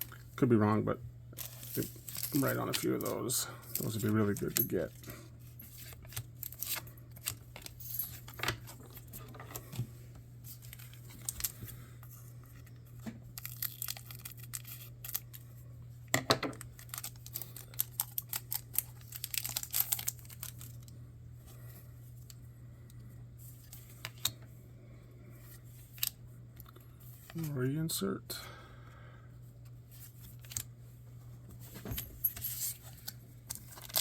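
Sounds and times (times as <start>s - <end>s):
low steady hum: 0.0s - 34.0s
cards and foil packs rustling: 1.3s - 9.8s, 10.4s - 15.6s, 16.5s - 20.9s, 29.9s - 30.7s, 31.6s - 34.0s.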